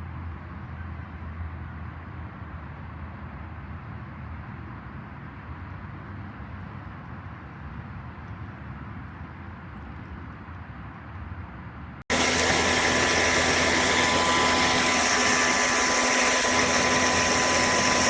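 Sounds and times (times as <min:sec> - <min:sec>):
pressure washer motor hum: 0:12.1 - 0:18.0.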